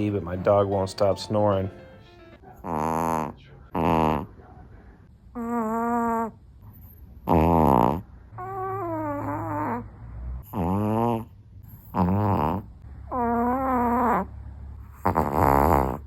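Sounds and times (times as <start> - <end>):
dog snoring: 2.6 - 4.4, 5.3 - 16.0.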